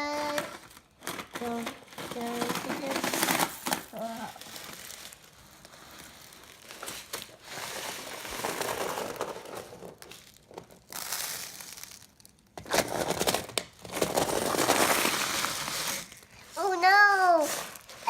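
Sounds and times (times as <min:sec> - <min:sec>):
sand scraping and crunching: 0:14.2 - 0:18.0.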